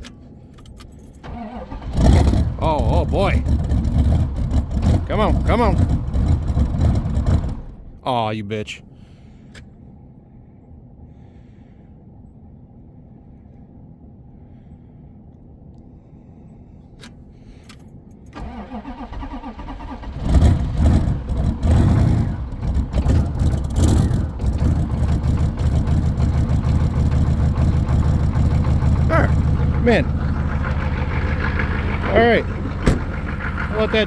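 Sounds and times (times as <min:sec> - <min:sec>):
starter cranking engine: 0:00.0 - 0:07.8, 0:17.7 - 0:34.0
diesel engine running unevenly: 0:00.6 - 0:08.0, 0:18.4 - 0:34.0.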